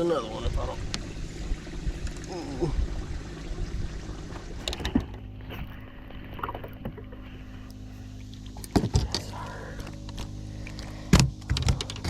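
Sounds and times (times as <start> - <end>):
faint low steady hum: 0.0 - 12.0
water lapping against boat hull: 0.0 - 12.0.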